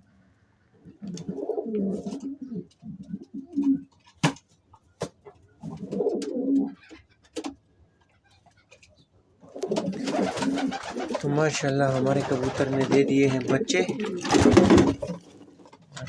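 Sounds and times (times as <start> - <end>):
pigeon cooing: 0.8 - 3.9, 5.6 - 7.0, 9.4 - 11.3, 12.0 - 15.2.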